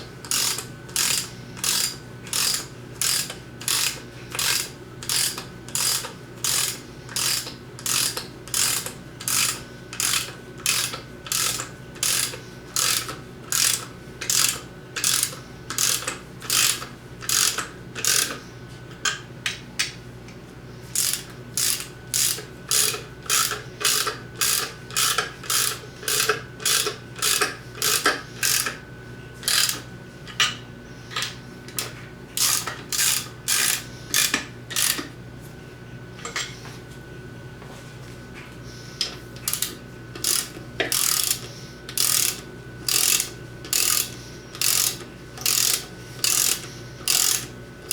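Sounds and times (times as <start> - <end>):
ratchet wrench clicking: 0.3 - 18.4, 21.0 - 28.8, 29.5 - 29.8, 32.4 - 35.1, 39.5 - 47.9.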